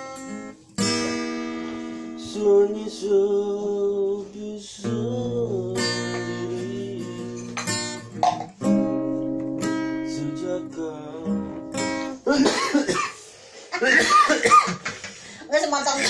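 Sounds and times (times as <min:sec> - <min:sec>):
acoustic guitar strummed: 0:00.0 - 0:13.2.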